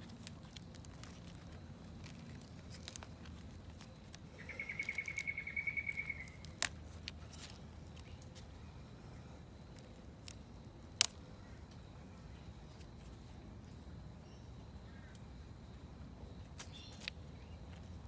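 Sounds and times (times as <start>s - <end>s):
leaf snapping off with click: 6.3s - 6.8s.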